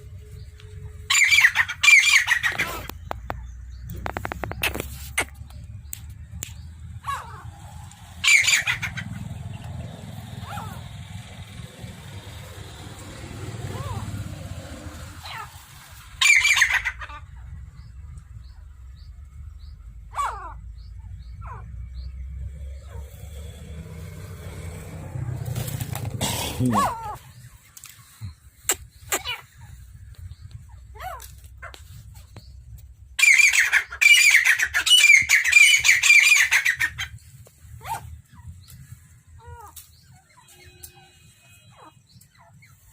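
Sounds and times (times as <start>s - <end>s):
quail calling harshly: 1.1s - 3.1s, 7.0s - 9.4s, 16.2s - 17.3s, 20.1s - 20.6s, 25.6s - 27.4s, 28.0s - 29.9s, 30.6s - 32.3s, 33.2s - 38.5s, 39.4s - 41.0s
steady low rumble: 2.6s - 16.2s.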